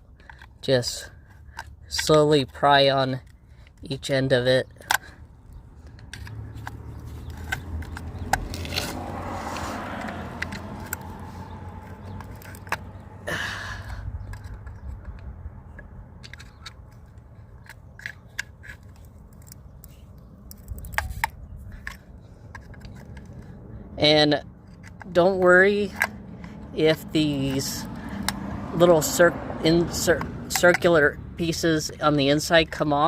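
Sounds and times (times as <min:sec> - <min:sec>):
sharp plastic clicks: 0:00.2 - 0:13.2, 0:13.8 - 0:23.6, 0:24.6 - 0:31.5
screwdriver scraping plastic: 0:05.9 - 0:13.0, 0:14.1 - 0:23.6.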